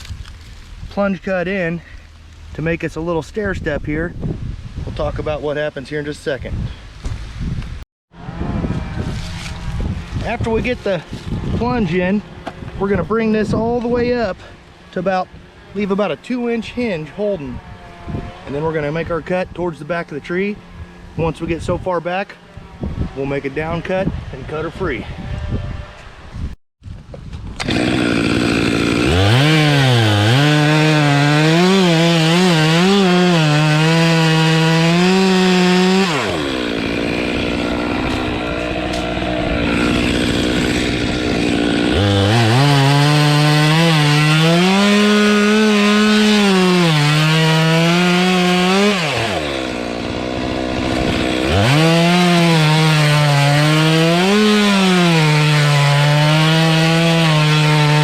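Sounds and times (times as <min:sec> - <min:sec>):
chainsaw cutting through wood: 0:08.2 - 0:21.0, 0:27.5 - 0:58.0.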